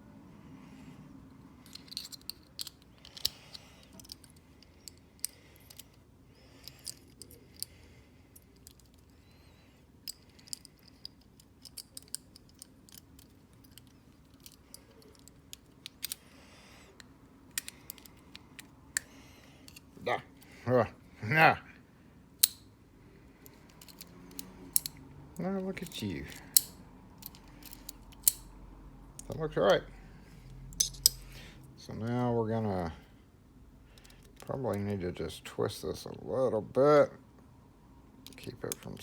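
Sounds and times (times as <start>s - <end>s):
light metallic clicks of lock parts: 1.6s - 20.5s, 22.4s - 22.7s, 23.3s - 29.8s, 30.4s - 31.4s, 33.9s - 34.9s, 38.2s - 39.0s.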